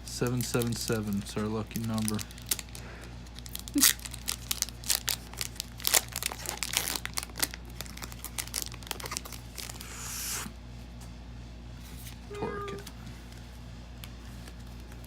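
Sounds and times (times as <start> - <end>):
foil wrapper crinkling and tearing: 0.2 - 10.4.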